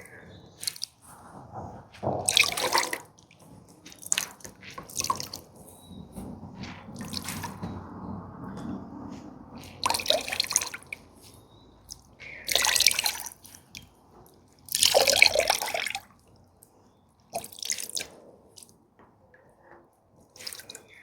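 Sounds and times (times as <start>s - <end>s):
water splashing from squeezed sweater: 0.6s - 1.0s, 2.0s - 3.2s, 3.8s - 5.6s, 6.2s - 7.6s, 9.6s - 14.0s, 14.6s - 16.3s, 17.3s - 18.7s, 20.3s - 21.0s.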